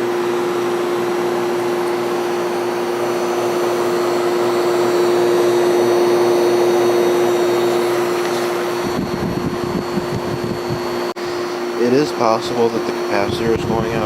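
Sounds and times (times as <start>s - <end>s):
compressor humming: 0.0s - 14.0s
fan air rushing: 0.0s - 14.0s
low rumbling: 8.7s - 11.1s.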